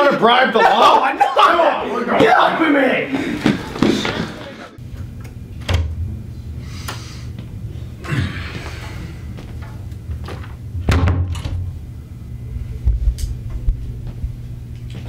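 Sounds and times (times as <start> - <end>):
steady low hum: 0.1 - 15.0
thuds and knocks: 10.8 - 11.7.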